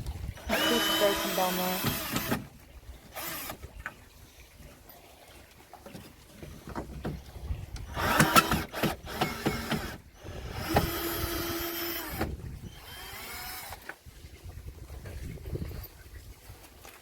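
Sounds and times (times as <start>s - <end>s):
shed panels creaking and scraping: 5.8s - 12.4s.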